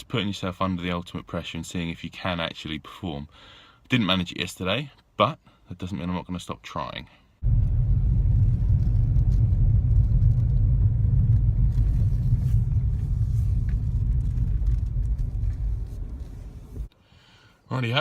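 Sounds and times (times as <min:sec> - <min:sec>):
car engine and road noise: 0:07.4 - 0:16.9.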